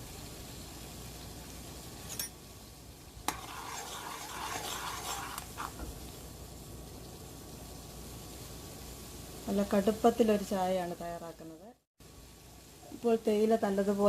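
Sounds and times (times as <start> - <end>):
boiling hiss: 0.0 - 14.0
spoon scraping and clinking pot: 2.0 - 2.4, 3.3 - 5.9.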